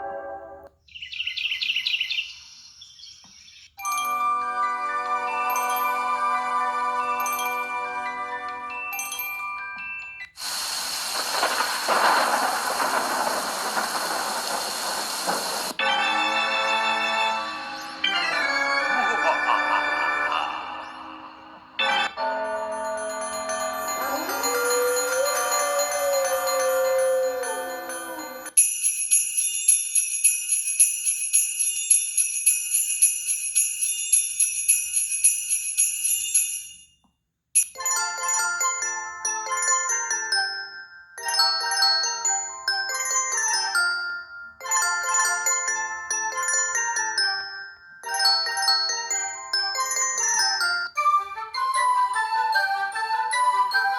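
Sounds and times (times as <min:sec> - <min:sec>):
chime tone: 0:03.8 - 0:10.4, 0:20.0 - 0:37.0
glockenspiel-like ringtone melody: 0:03.8 - 0:10.4, 0:15.8 - 0:37.0, 0:37.6 - 0:53.9
jingling ringtone: 0:03.8 - 0:10.4, 0:21.8 - 0:37.0, 0:37.6 - 0:53.0
hissing noise-like ringtone: 0:10.0 - 0:15.8, 0:21.8 - 0:28.6
organ-like tone: 0:10.8 - 0:28.5.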